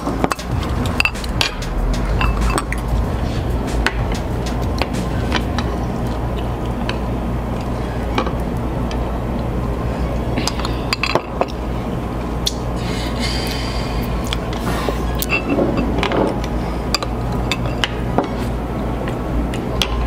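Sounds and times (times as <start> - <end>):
steady low hum: 0.0 - 20.0
cutlery clinking against dishes: 15.2 - 16.3.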